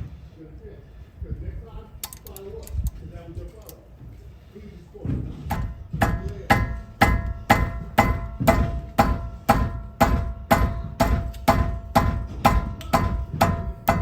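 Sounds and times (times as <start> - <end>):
hammer striking steel wrench: 5.5 - 14.0.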